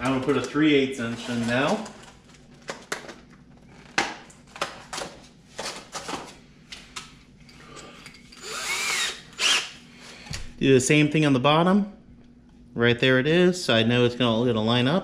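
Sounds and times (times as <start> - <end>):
drill burst with gliding whine: 8.4 - 9.8.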